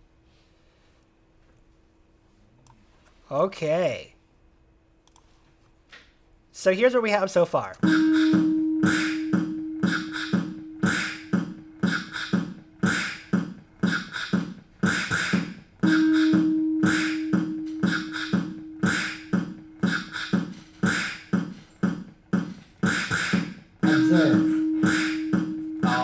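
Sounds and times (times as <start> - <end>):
long held pitched note: 7.8 - 11.8, 15.8 - 19.3, 23.8 - 26.0
mouth-made percussion beat: 7.8 - 26.0.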